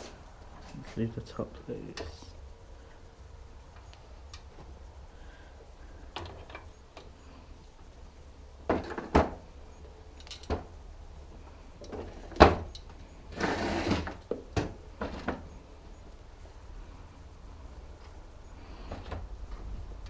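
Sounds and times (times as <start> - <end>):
metal tools knocking and clinking: 10.2 - 10.6.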